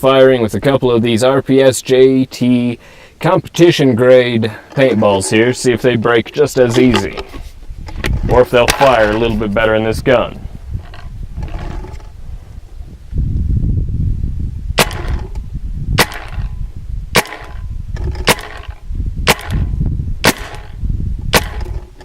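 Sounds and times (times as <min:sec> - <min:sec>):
low rumble: 0:06.8 - 0:21.8
paintball gun firing: 0:14.8 - 0:15.4, 0:16.0 - 0:21.8.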